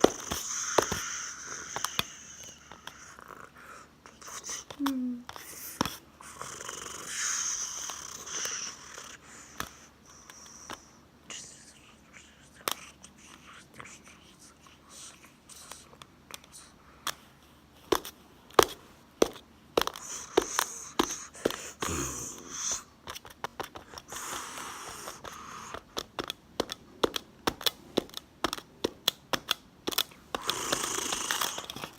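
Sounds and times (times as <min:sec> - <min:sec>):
person imitating horse snorts: 0:21.4 - 0:22.8, 0:30.4 - 0:31.9.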